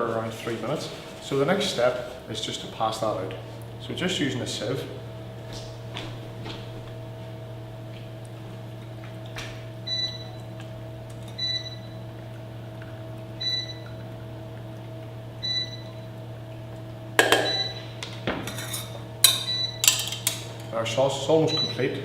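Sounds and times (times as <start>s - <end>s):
steady low hum: 0.0s - 22.0s
metal kitchenware clatter: 18.4s - 20.7s.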